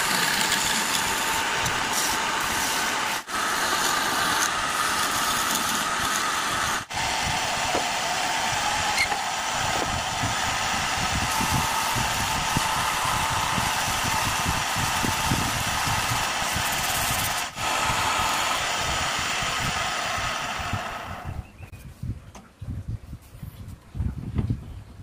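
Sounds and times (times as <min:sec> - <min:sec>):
wood lathe whirring: 0:00.0 - 0:21.4.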